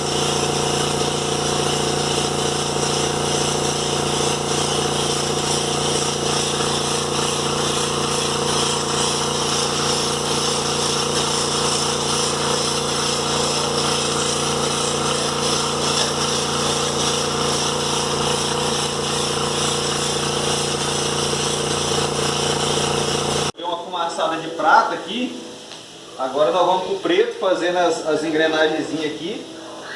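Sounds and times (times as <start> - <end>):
compressor motor hum: 0.0 - 23.6
spray gun hissing: 0.0 - 23.6.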